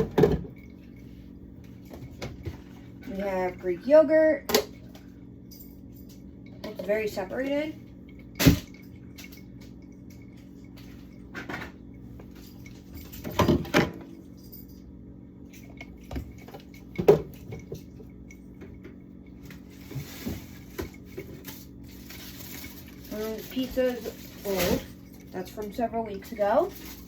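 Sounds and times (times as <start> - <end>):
steady low hum: 0.0 - 27.0
containers and jars clattering: 6.4 - 14.2, 15.5 - 27.0.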